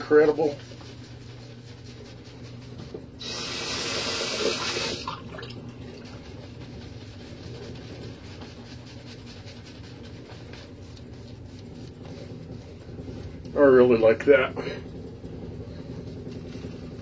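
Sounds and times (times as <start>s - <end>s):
water running from a sink tap: 3.2s - 5.7s.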